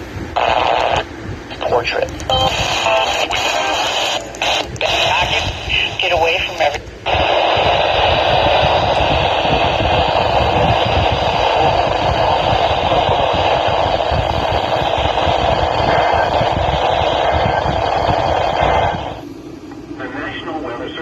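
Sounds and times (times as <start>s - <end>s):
low rumble: 0.0s - 20.1s.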